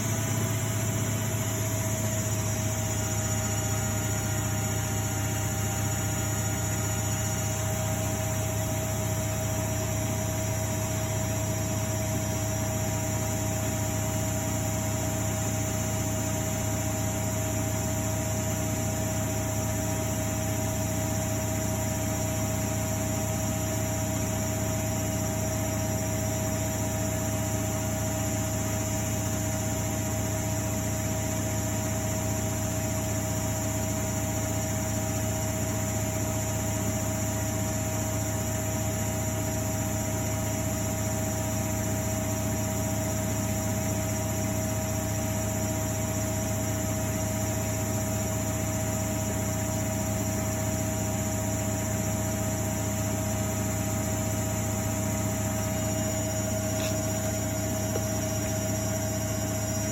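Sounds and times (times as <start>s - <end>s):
washing machine spinning: 0.0s - 59.9s.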